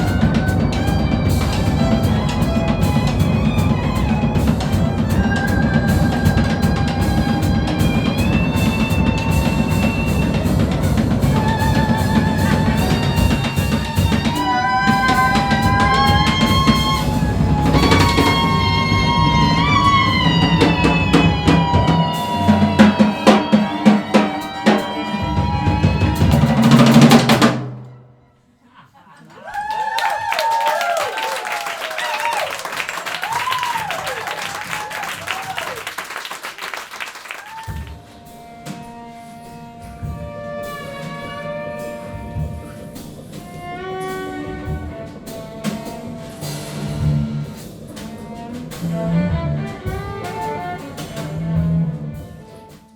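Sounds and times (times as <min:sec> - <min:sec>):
drum kit rolls and cymbals: 0:00.0 - 0:28.1, 0:29.5 - 0:52.9
sustained sliding high notes: 0:09.1 - 0:27.0.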